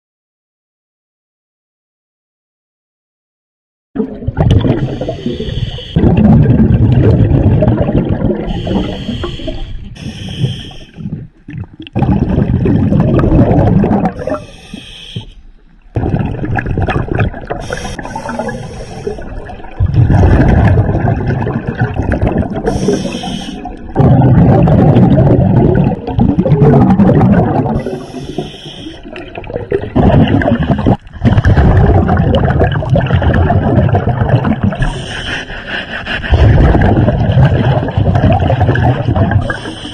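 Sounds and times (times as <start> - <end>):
rush of bubbles: 4.0 - 14.6, 15.9 - 39.9
regulator hiss on inhale: 4.8 - 6.0, 8.5 - 11.0, 14.2 - 15.6, 17.6 - 19.3, 22.7 - 23.7, 27.8 - 29.1, 34.8 - 36.3, 39.5 - 39.9.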